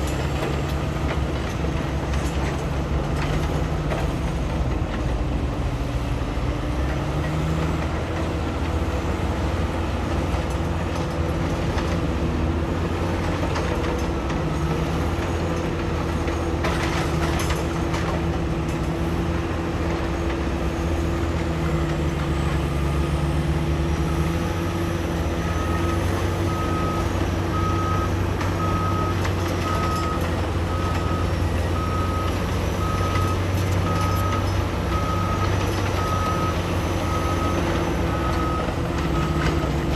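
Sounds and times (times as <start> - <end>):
heavy diesel machinery running: 0.0 - 39.9
reversing alarm beeping: 22.3 - 39.9.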